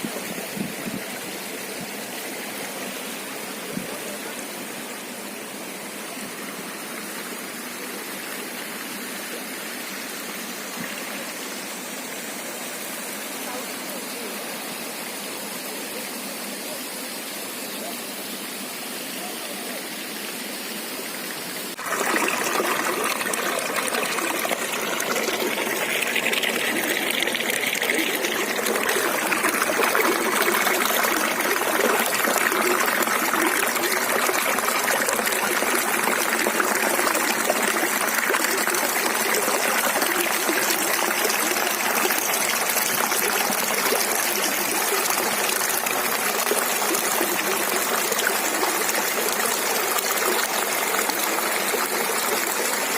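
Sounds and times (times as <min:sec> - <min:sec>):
river water flowing: 0:00.0 - 0:52.9.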